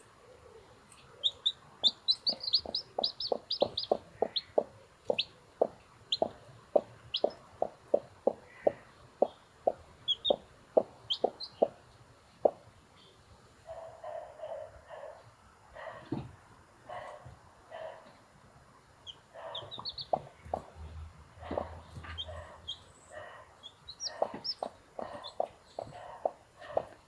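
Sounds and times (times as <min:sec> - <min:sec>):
chicks peeping: 0:01.0 - 0:11.8, 0:19.0 - 0:20.8, 0:21.4 - 0:27.0
hen clucking: 0:01.1 - 0:11.8, 0:19.0 - 0:27.0.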